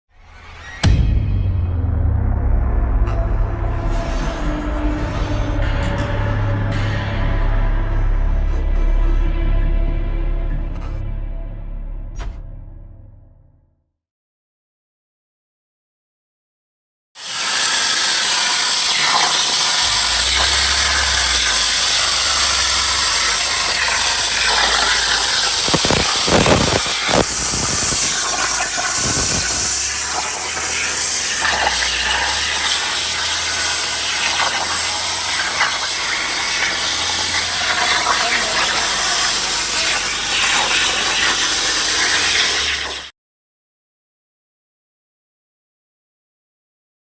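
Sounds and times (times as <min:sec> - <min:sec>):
plasma torch hissing: 0:17.2 - 0:43.1.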